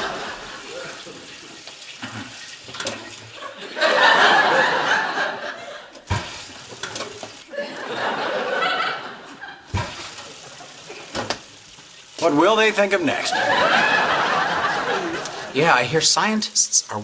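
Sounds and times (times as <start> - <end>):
studio audience laughing: 0.0 - 2.4, 3.0 - 6.1, 7.4 - 11.2, 13.1 - 15.6.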